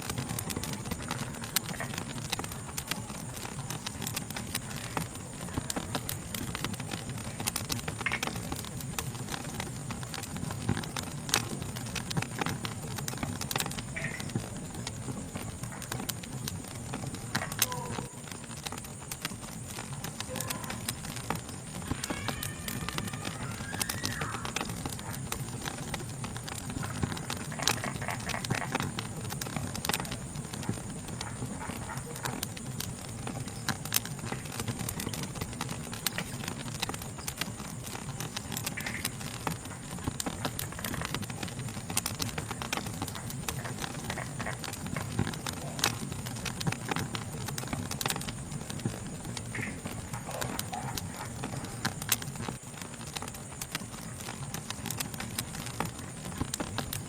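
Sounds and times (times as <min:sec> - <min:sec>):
insect chorus: 0:00.0 - 0:57.0
wood fire crackling and popping: 0:00.0 - 0:57.0.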